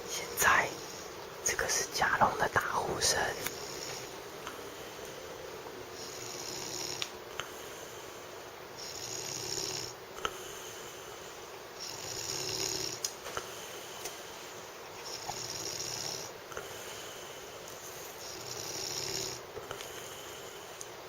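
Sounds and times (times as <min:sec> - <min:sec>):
person snoring: 0:06.0 - 0:13.8, 0:15.0 - 0:17.3.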